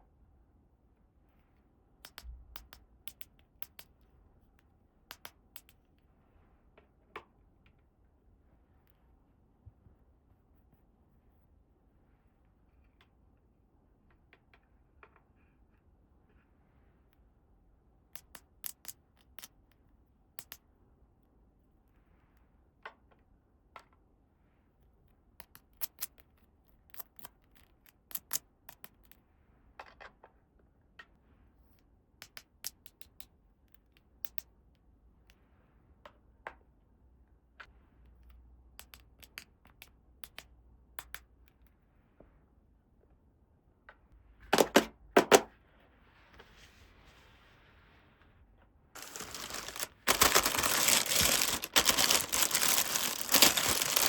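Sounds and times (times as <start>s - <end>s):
toy pieces clicking and tapping: 2.1s - 3.9s, 18.2s - 19.5s, 26.9s - 29.2s.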